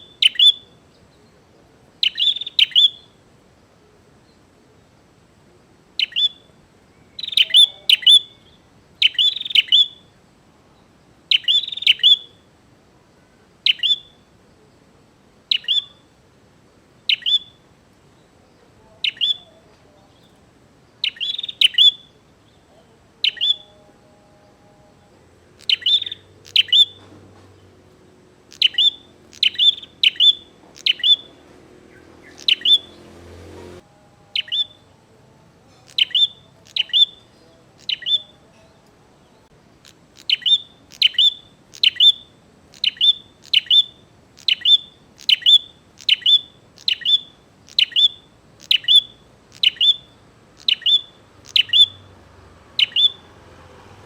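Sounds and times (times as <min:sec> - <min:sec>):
bird sharp high chirps: 0:00.0 - 0:01.0, 0:02.0 - 0:03.2, 0:06.0 - 0:10.1, 0:11.3 - 0:12.4, 0:13.6 - 0:14.2, 0:15.5 - 0:16.1, 0:17.1 - 0:17.6, 0:19.0 - 0:19.5, 0:21.0 - 0:22.2, 0:23.2 - 0:23.8, 0:25.6 - 0:27.7, 0:28.5 - 0:33.6, 0:34.4 - 0:34.8, 0:35.8 - 0:38.6, 0:39.7 - 0:52.1, 0:52.8 - 0:53.3.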